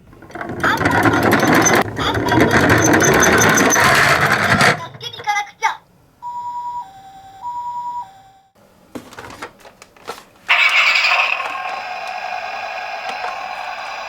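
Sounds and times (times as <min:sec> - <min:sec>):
toy two-tone siren: 0:10.5 - 0:14.0.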